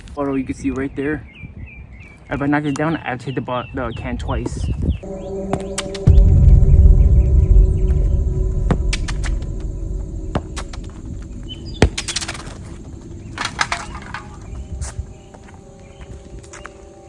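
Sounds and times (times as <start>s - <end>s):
low rumble: 5.0s - 14.8s.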